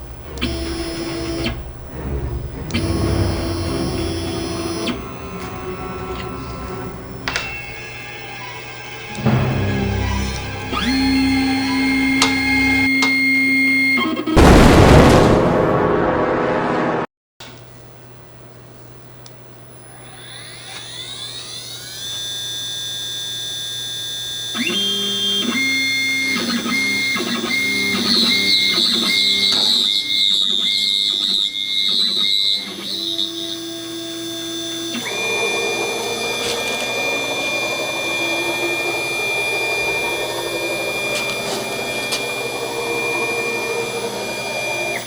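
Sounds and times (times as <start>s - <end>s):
router spindle whine: 0.0s - 14.4s, 19.5s - 45.0s
stepper motors stepped tones: 0.0s - 15.2s, 19.0s - 45.0s.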